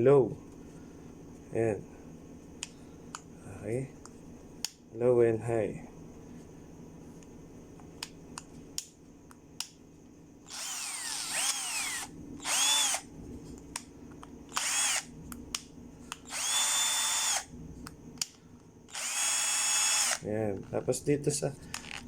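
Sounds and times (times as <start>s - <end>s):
cordless drill whining: 10.5s - 13.0s, 14.5s - 15.1s, 16.2s - 17.5s, 18.9s - 20.2s.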